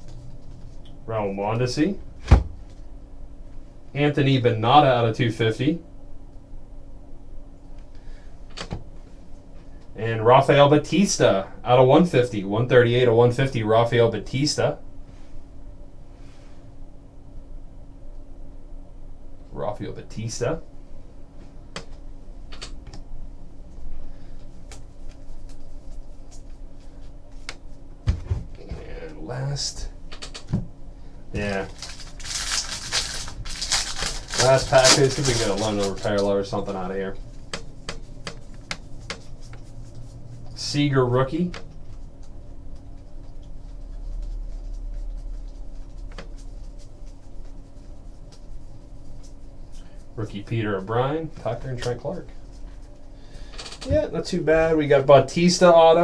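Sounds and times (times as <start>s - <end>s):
low room hum: 0.0s - 56.0s
trading cards ticking and scraping: 31.4s - 36.8s.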